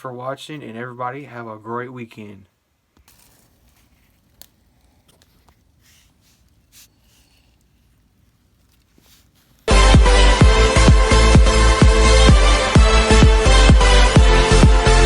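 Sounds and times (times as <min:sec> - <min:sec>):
faint clicks and rustles: 0:02.9 - 0:09.7
electronic dance music: 0:09.7 - 0:15.0.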